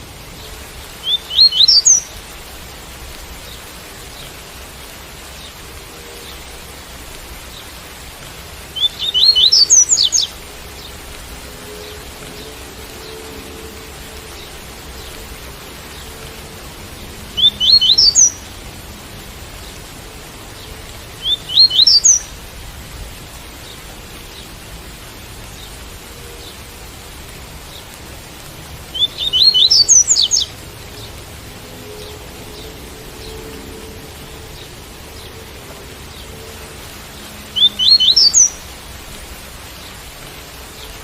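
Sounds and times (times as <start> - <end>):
steady rain hiss: 0.0 - 41.0
bird singing rising chirps: 1.0 - 2.1, 8.7 - 16.4, 17.3 - 18.5, 21.2 - 22.3, 28.9 - 38.8.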